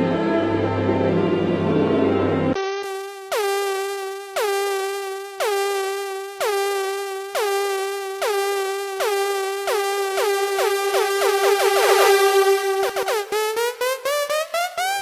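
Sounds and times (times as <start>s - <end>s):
dense electronic music: 2.5s - 15.0s
synthesizer note swooping down: 2.5s - 15.0s.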